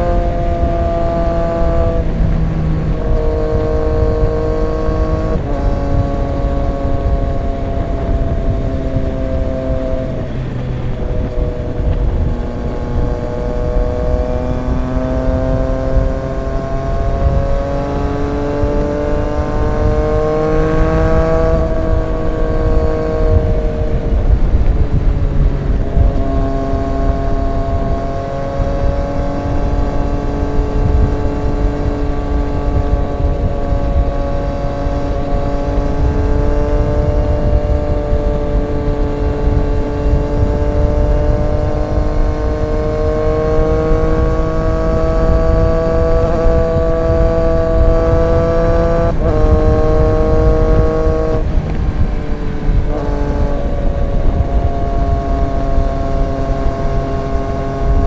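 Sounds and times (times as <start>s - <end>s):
motorcycle engine cruising: 0.0s - 58.0s
road rumble: 0.0s - 58.0s
wind: 0.0s - 58.0s.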